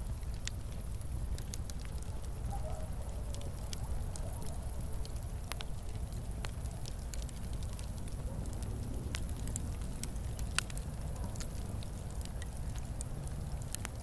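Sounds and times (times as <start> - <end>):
wood fire crackling: 0.0 - 14.0.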